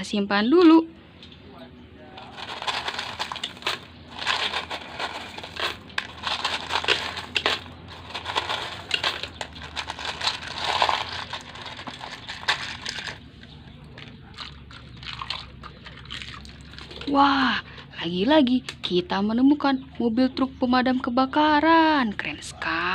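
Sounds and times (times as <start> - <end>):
hands stirring gravel: 2.2 - 17.1.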